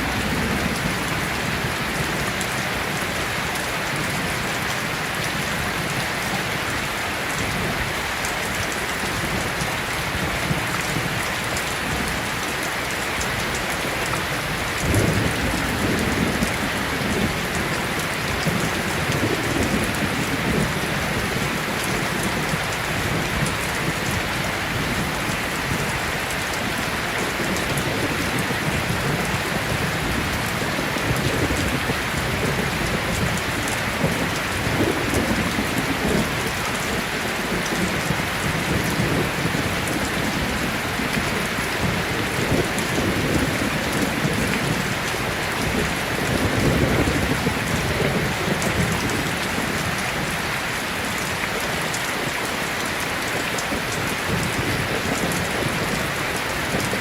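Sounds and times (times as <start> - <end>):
steady rain: 0.0 - 57.0
thunder rumbling: 14.4 - 50.4.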